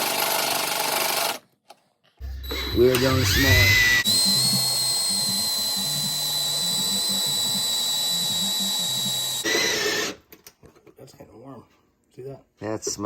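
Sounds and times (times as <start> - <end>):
electric drill whining: 2.2 - 10.2.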